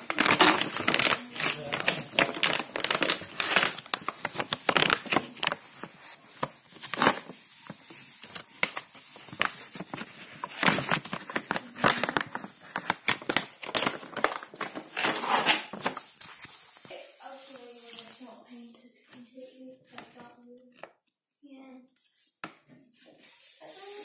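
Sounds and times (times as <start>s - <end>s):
plastic packaging crinkling: 0.0s - 18.3s.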